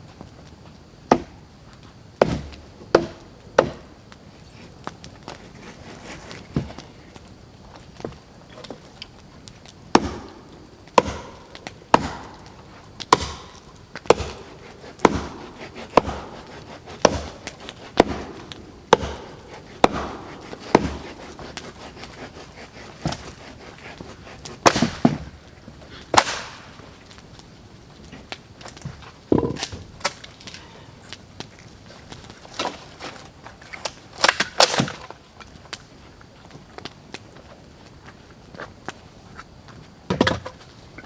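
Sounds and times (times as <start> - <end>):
axe chopping wood: 2.2 - 3.9, 9.9 - 25.4, 26.1 - 26.7.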